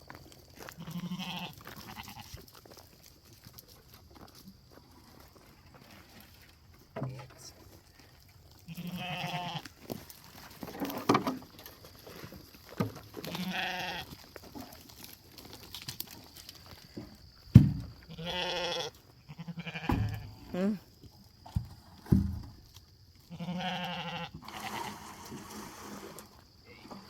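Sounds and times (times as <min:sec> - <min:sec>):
sheep bleating: 0:00.7 - 0:02.3, 0:08.7 - 0:09.7, 0:13.2 - 0:14.1, 0:18.1 - 0:20.3, 0:23.3 - 0:24.9.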